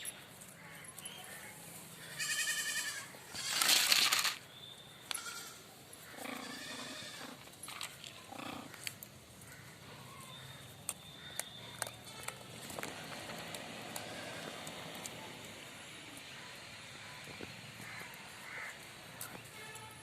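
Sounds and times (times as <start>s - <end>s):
bleat-like animal calls: 2.0s - 3.9s, 5.1s - 7.4s.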